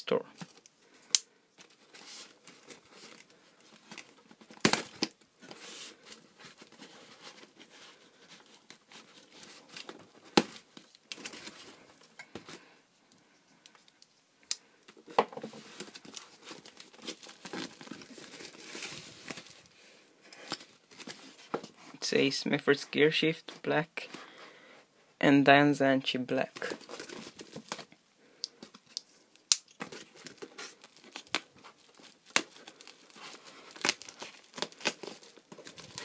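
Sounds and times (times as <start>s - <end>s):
packaging crinkling and tearing: 15.6s - 19.7s, 26.5s - 27.9s, 28.9s - 36.0s.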